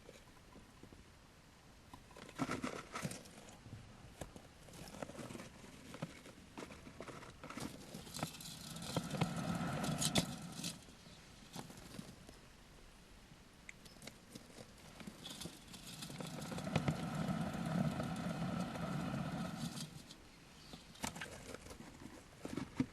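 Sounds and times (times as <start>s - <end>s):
scratchy rustling: 4.4s - 12.3s, 14.0s - 20.2s.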